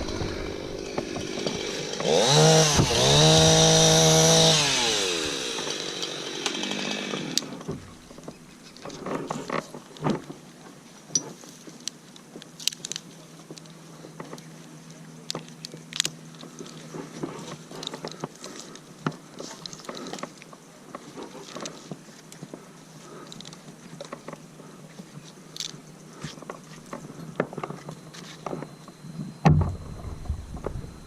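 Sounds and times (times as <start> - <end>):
chainsaw stopping: 0.0 - 8.2
climbing gear clicks and knocks: 11.1 - 22.6, 23.2 - 31.0
faint low hum: 12.8 - 31.0.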